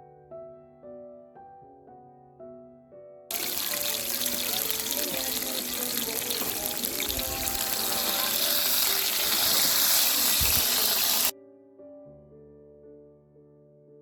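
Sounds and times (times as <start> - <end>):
soft background music: 0.0 - 14.0
rushing water: 3.3 - 11.3.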